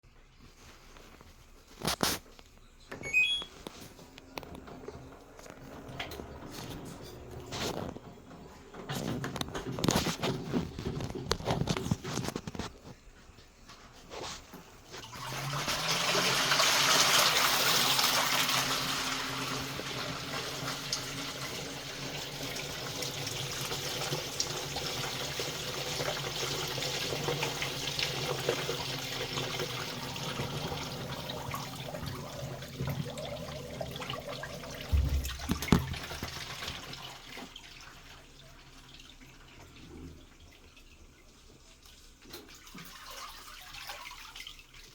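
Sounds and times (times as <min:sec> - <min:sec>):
water running into washing machine: 0:03.0 - 0:12.7, 0:13.8 - 0:44.9
short low thump: 0:34.9 - 0:36.0.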